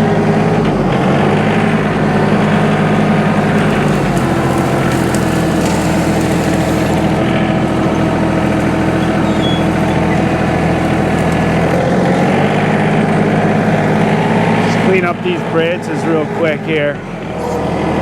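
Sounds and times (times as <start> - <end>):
tractor diesel engine running: 0.0 - 18.0.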